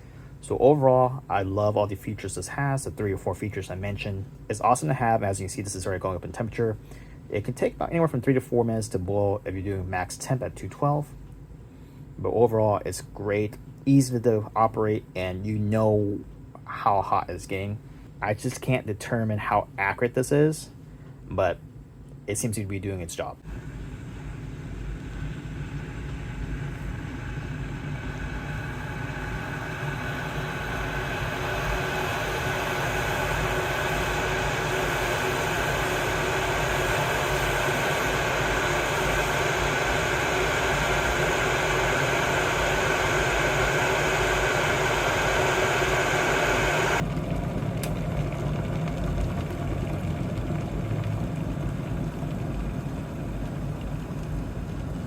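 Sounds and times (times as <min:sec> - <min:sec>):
kettle heating water: 0:23.4 - 0:55.0.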